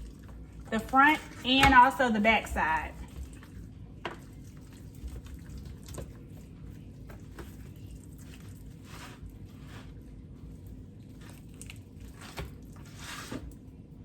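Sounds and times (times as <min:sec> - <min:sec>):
faint wet squishing: 0:02.9 - 0:13.7.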